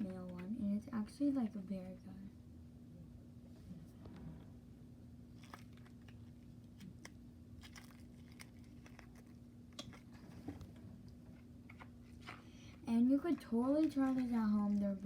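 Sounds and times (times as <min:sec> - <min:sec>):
steady low hum: 0:00.0 - 0:15.0
squishy toy crackling: 0:05.3 - 0:10.2.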